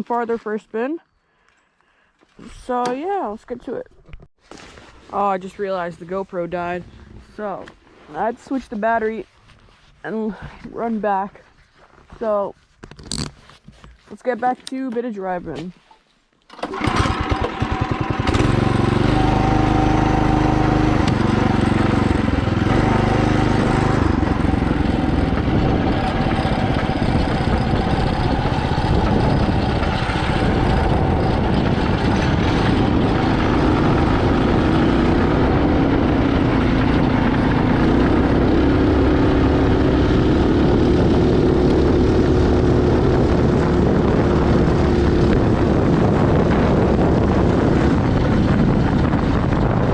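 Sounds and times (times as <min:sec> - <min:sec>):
mini bike engine running: 0:16.6 - 0:49.9.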